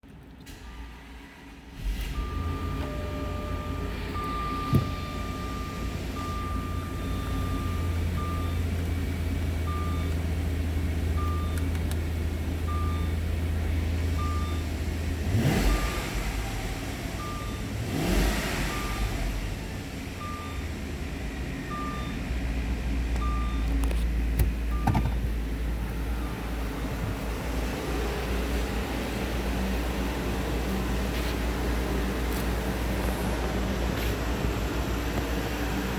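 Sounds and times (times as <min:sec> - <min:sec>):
car engine idling and revving: 0:00.0 - 0:35.9
warning beeps: 0:02.1 - 0:08.7, 0:21.7 - 0:22.2, 0:23.2 - 0:23.8
warning chime: 0:02.2 - 0:07.9.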